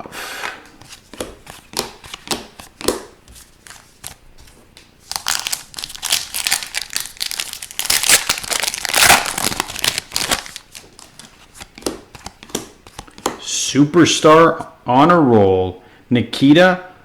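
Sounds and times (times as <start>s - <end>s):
foil wrapper crinkling and tearing: 5.1s - 11.3s.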